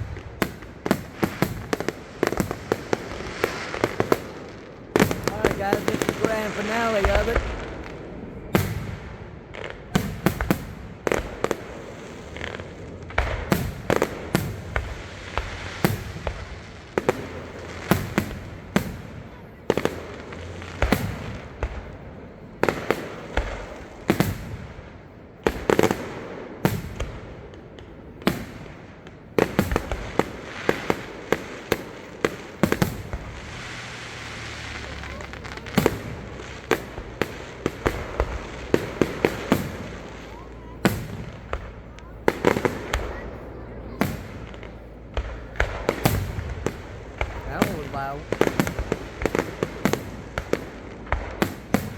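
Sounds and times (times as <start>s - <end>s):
rumbling echo: 32.7s - 51.9s.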